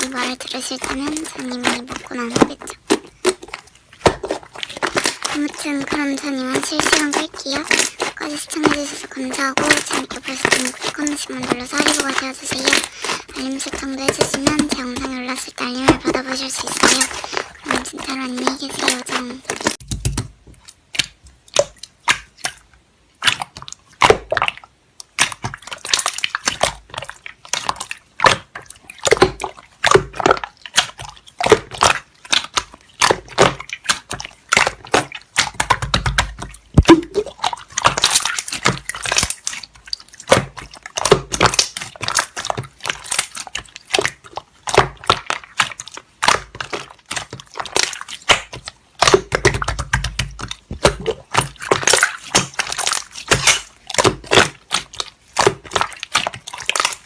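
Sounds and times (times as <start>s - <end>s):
slime squishing by hand: 0.0s - 57.0s.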